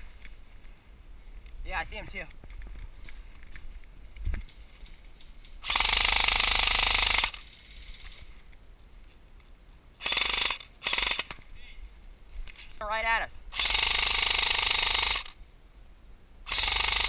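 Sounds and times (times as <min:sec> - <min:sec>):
airsoft gun firing bursts: 0:05.6 - 0:08.0, 0:10.0 - 0:11.4, 0:13.5 - 0:15.4, 0:16.5 - 0:17.0.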